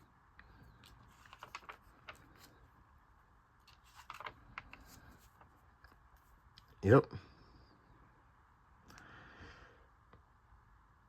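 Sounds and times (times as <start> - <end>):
paper pages rustling: 0.0 - 6.6.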